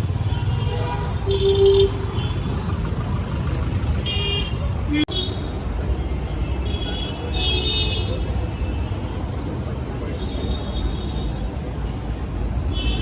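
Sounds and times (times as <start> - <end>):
low rumble of engines: 0.0 - 13.0
vehicle horns honking: 0.2 - 2.5, 4.0 - 5.4.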